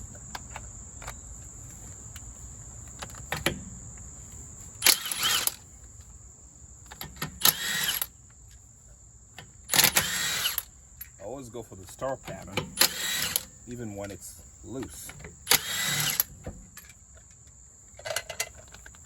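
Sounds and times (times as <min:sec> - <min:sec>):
high insect trill: 0:00.0 - 0:19.0
power tool spinning lug nuts: 0:04.8 - 0:05.7, 0:06.9 - 0:08.2, 0:09.4 - 0:10.7, 0:11.9 - 0:14.1, 0:14.7 - 0:16.9.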